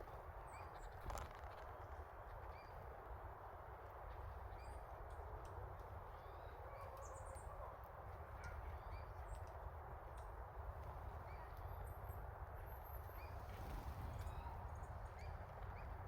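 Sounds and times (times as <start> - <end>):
low rumble: 13.1 - 16.0.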